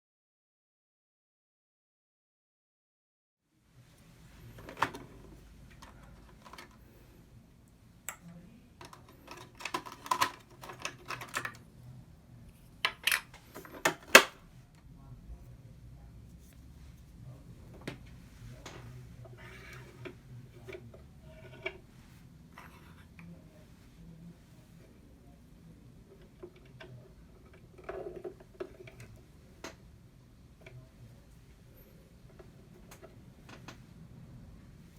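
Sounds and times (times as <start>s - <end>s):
hard plastic parts clicking: 5.8s - 6.8s, 8.1s - 11.6s, 12.8s - 14.4s.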